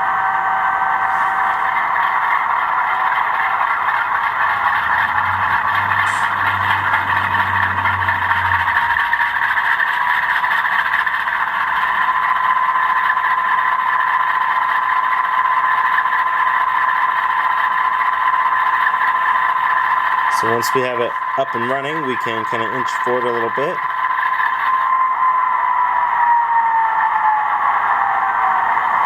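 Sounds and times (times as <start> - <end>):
low rumble: 0.0 - 10.2
model locomotive engine drone: 0.0 - 29.0.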